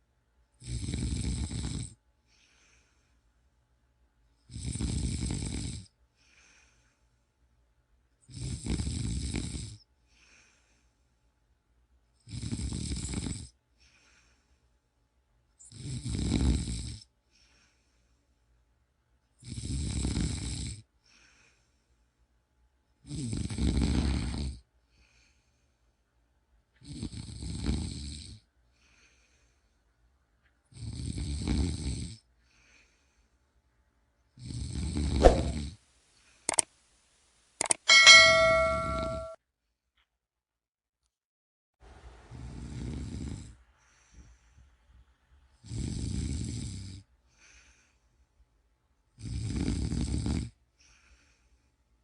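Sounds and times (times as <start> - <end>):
person snoring: 0.6 - 1.9, 4.5 - 5.9, 8.3 - 9.7
sharp clicks: 36.5 - 36.7, 37.6 - 37.8
ringing ding-like tone: 37.9 - 39.4.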